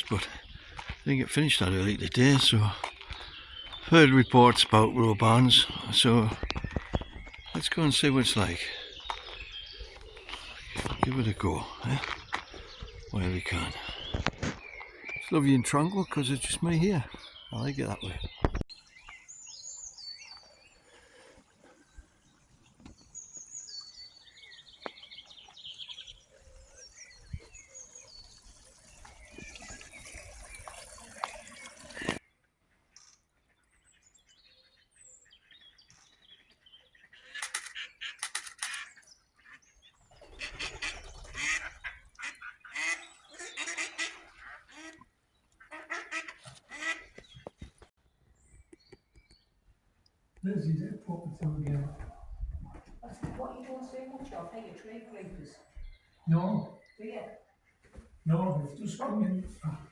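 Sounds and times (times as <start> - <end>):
small birds chirping: 0.0 - 59.9
geese honking: 37.2 - 47.2.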